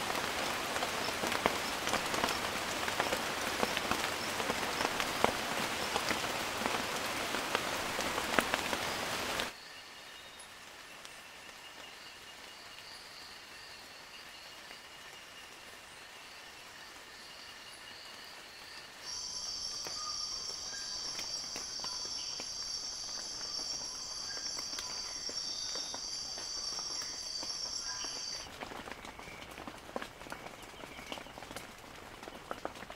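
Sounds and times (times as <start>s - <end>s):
insects trilling: 16.8s - 28.5s.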